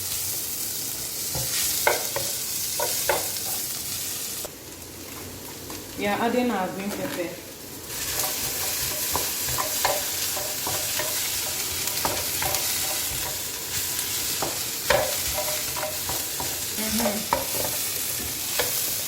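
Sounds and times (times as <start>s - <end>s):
vegetables sizzling in hot oil: 0.0s - 19.0s
utensil knocking against pan: 8.2s - 13.4s.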